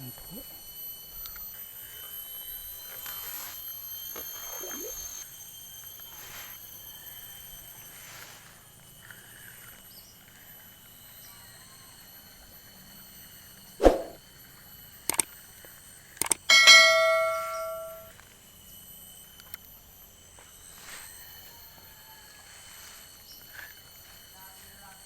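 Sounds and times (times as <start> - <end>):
high insect calls: 0.0 - 25.0
short clicks: 16.2 - 16.5.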